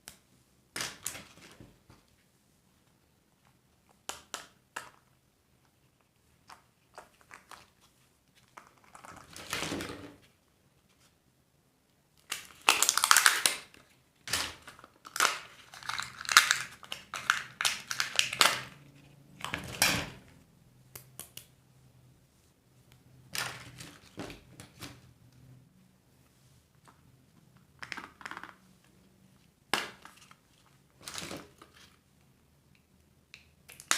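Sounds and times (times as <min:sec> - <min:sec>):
candy wrappers crinkling: 0:12.2 - 0:18.8.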